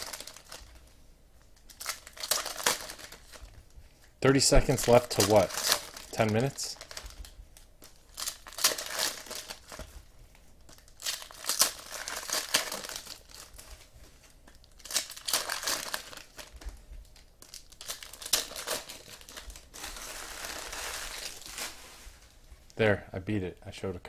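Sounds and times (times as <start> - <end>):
card packs being torn open: 0.0 - 0.8, 1.7 - 3.4, 4.7 - 7.2, 7.9 - 9.8, 10.7 - 13.7, 14.6 - 16.5, 17.4 - 21.8
wrappers crinkling: 0.0 - 22.5.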